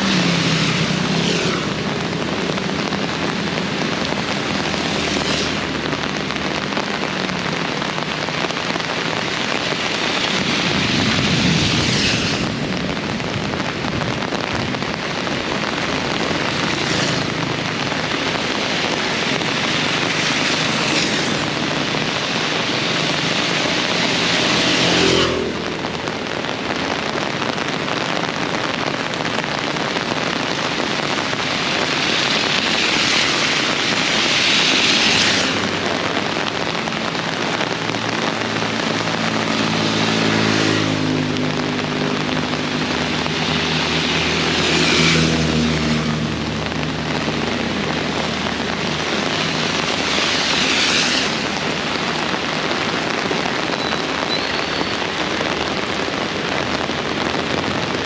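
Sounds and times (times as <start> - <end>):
heavy rain hissing: 0.0 - 58.0
engine hum passing: 15.7 - 25.7, 29.8 - 53.7.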